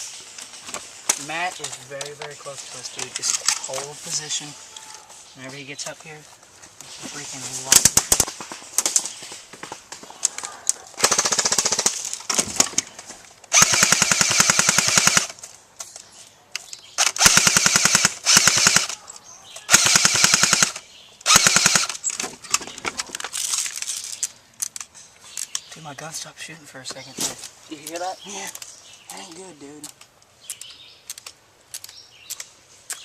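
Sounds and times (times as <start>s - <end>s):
airsoft guns firing bursts: 11.0s - 12.6s, 13.5s - 15.4s, 17.0s - 19.0s, 19.7s - 22.0s.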